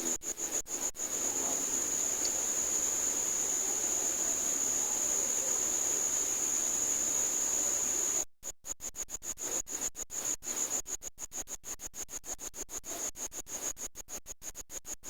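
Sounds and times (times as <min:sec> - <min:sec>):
hiss: 0:01.0 - 0:08.2.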